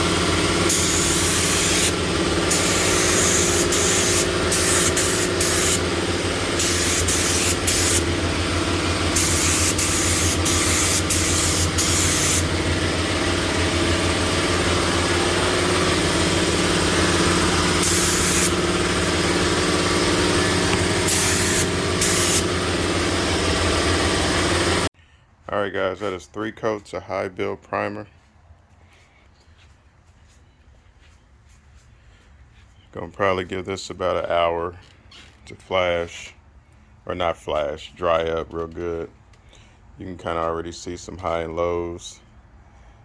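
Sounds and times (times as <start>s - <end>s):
low machine hum: 0.0s - 24.9s
spray gun hissing: 0.5s - 13.6s, 16.2s - 19.6s, 20.8s - 23.2s.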